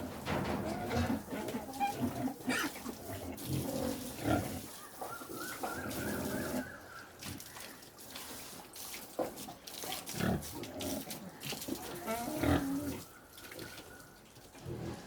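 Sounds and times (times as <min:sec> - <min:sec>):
pigs grunting: 0:00.0 - 0:04.8, 0:10.1 - 0:13.8.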